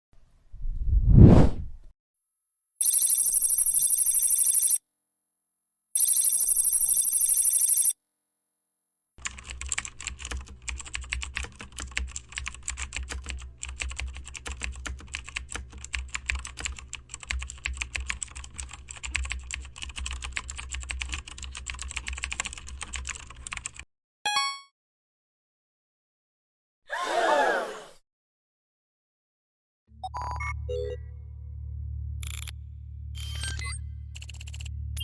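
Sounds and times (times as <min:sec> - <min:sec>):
fast keyboard typing: 0:09.2 - 0:23.8, 0:34.2 - 0:34.7.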